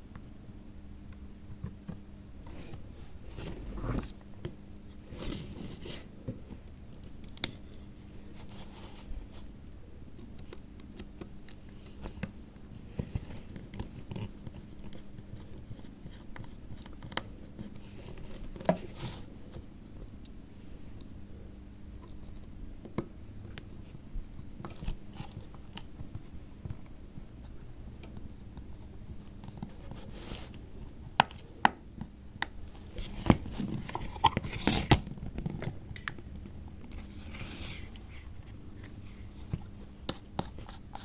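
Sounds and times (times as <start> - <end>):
faint steady hum: 0.0 - 41.0.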